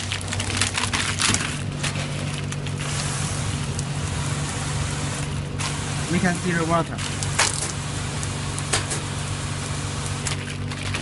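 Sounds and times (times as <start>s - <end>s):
low machine hum: 0.0s - 11.0s
water hissing from spray gun: 2.8s - 10.4s
pump tone: 2.8s - 11.0s.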